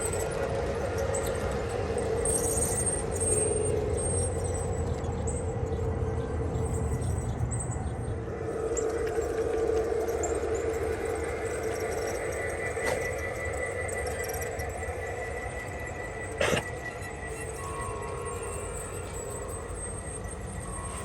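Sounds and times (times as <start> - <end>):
high-pitched wheel squeals: 8.5 - 21.0.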